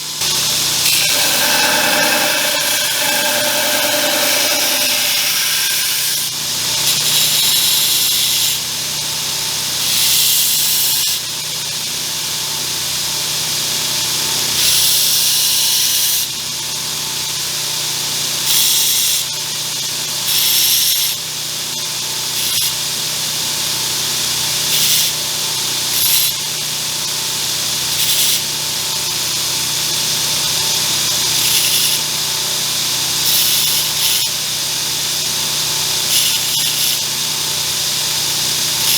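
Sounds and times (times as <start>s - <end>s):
electric grinder running: 0.6s - 6.3s
steel grinding hiss: 0.7s - 6.4s.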